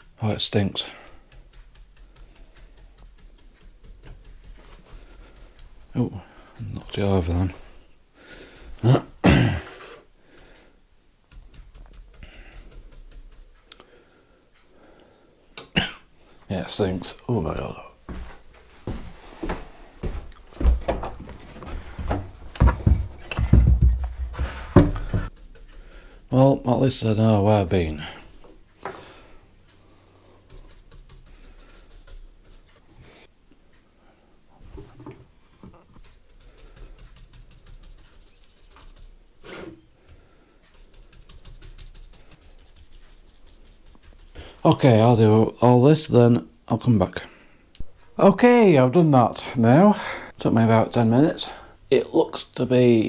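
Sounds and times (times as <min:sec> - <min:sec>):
brush strokes on wood: 0:00.2 - 0:08.0, 0:11.3 - 0:14.1, 0:16.4 - 0:28.6, 0:29.3 - 0:33.3, 0:36.0 - 0:39.8, 0:40.5 - 0:45.6
knocks and dull thumps: 0:18.1 - 0:25.4.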